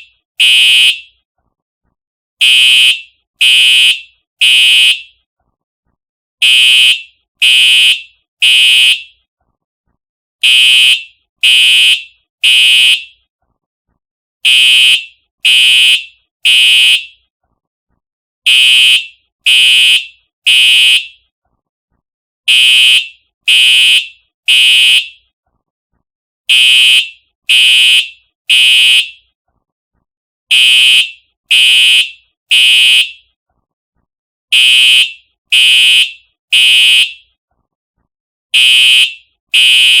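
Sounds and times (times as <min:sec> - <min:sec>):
fire alarm horn blasts: 0:00.4 - 0:01.1, 0:02.4 - 0:05.2, 0:06.4 - 0:09.2, 0:10.4 - 0:13.2, 0:14.4 - 0:17.2, 0:18.5 - 0:21.2, 0:22.5 - 0:25.3, 0:26.5 - 0:29.3, 0:30.5 - 0:33.3, 0:34.5 - 0:37.3, 0:38.5 - 0:40.0.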